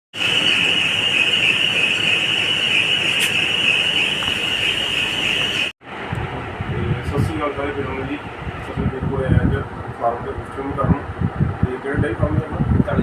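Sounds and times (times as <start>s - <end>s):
high-pitched whine: 0.2s - 9.0s
noisy hiss: 0.2s - 13.0s.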